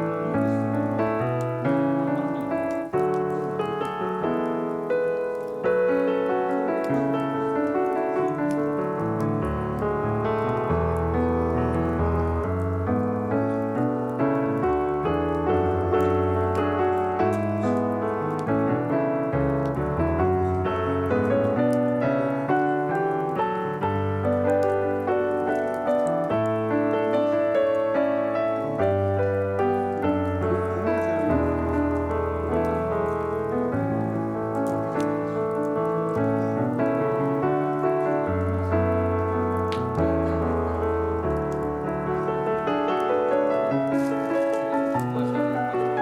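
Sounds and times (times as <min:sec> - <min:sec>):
piano music: 0:00.0 - 0:46.0.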